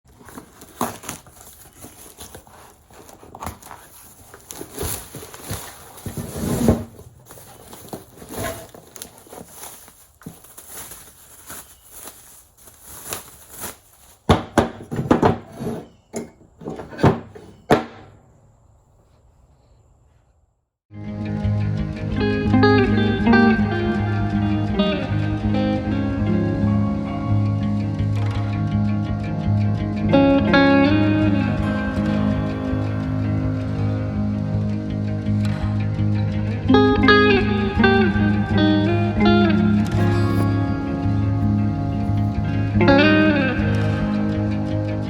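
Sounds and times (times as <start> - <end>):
knocks and clatter: 14.3 - 18.2.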